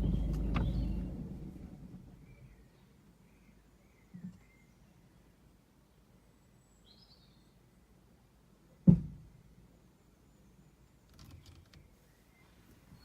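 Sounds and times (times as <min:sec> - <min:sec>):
heavy clunk from car: 0:08.8 - 0:09.2.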